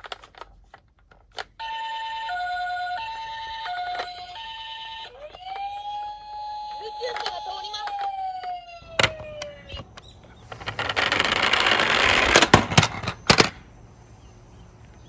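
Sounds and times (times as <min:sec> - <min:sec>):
sharp plastic clacks: 0:00.0 - 0:01.6, 0:06.7 - 0:13.6
toy car rolling down plastic slope: 0:00.0 - 0:09.8, 0:10.4 - 0:13.6
toy electronic siren: 0:01.4 - 0:10.0.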